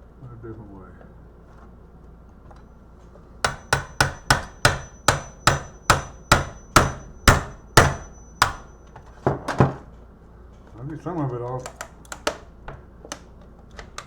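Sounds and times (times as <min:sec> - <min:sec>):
hammer knocking on plastic case: 0:03.5 - 0:08.6.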